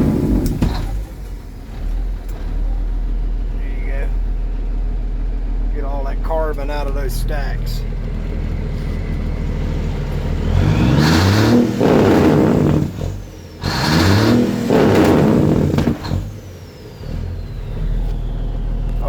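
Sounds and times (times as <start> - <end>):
diesel truck engine idling and revving: 0.0 - 19.0.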